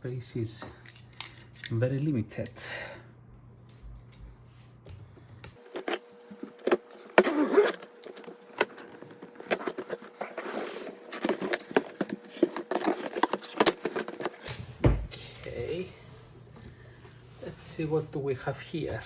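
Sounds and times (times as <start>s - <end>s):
faint steady hum: 0.0s - 19.0s
cardboard box being torn open: 5.7s - 14.5s.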